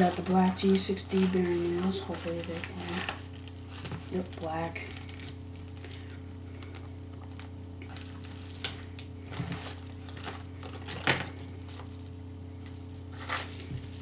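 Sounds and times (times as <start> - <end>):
electrical hum: 0.0 - 14.0
packaging rustling: 0.0 - 14.0.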